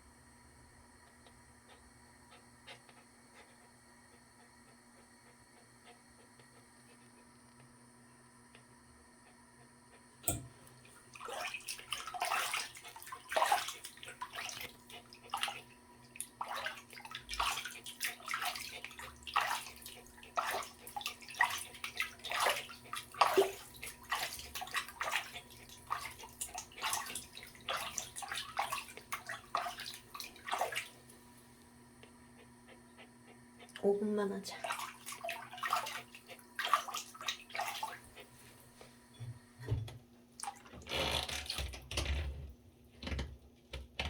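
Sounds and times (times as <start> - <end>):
water splashing in a bathtub: 10.2 - 32.5, 33.3 - 44.0.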